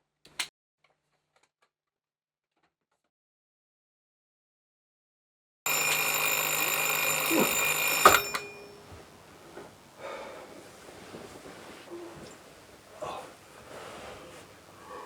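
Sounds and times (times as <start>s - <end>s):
alarm clock switch click: 5.7s - 8.9s
bell alarm clock ringing: 5.7s - 9.4s
faint rustling: 7.4s - 15.0s.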